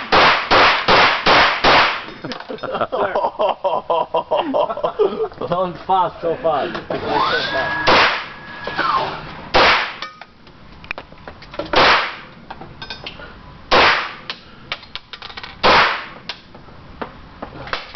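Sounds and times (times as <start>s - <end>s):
pistol shots: 0.0s - 2.1s, 7.8s - 8.3s, 9.5s - 10.0s, 11.8s - 12.3s, 13.7s - 14.3s, 15.6s - 16.2s.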